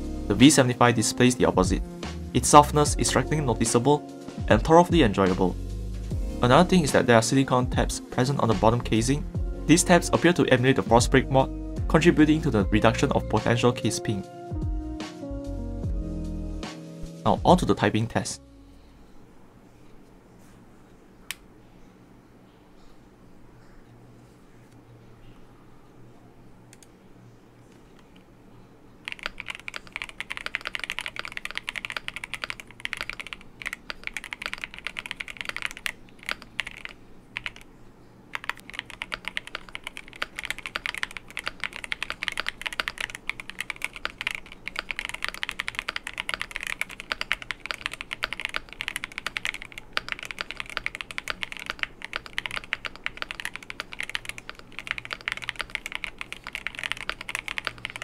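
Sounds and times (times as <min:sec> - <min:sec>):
fast typing on mechanical keyboard: 0:29.0 - 0:37.7, 0:38.3 - 0:58.0.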